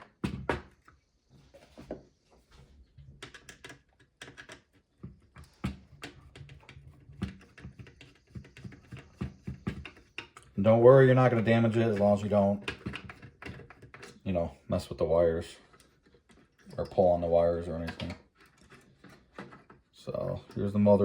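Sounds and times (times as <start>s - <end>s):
small plastic parts handled: 11.2s - 14.3s, 15.6s - 21.0s.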